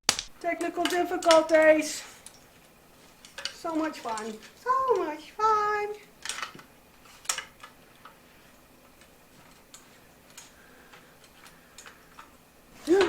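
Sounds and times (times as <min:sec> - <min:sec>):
light clicks and taps: 0:00.6 - 0:05.1, 0:06.2 - 0:13.0.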